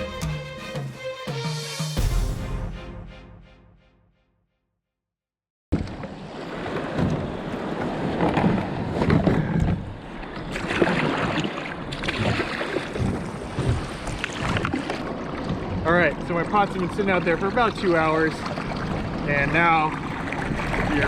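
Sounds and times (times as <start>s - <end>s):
water sloshing around kayak: 5.8s - 21.0s
wind on microphone: 18.0s - 21.0s.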